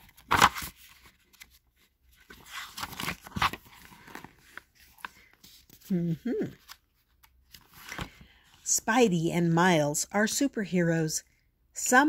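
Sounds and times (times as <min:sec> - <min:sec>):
paper rustling: 0:00.0 - 0:05.9, 0:06.5 - 0:08.4.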